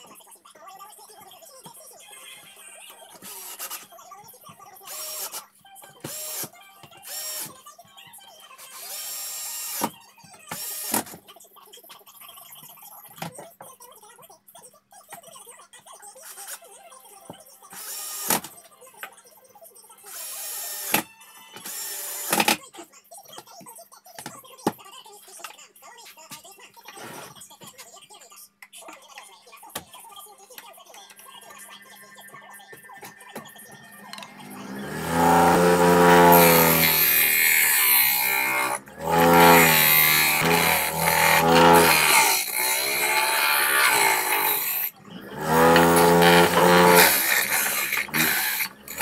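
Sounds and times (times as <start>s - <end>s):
small electric motor bursts: 3.2s - 3.8s, 7.1s - 7.5s, 17.8s - 18.4s, 20.1s - 21.0s, 21.7s - 22.5s, 34.3s - 49.0s.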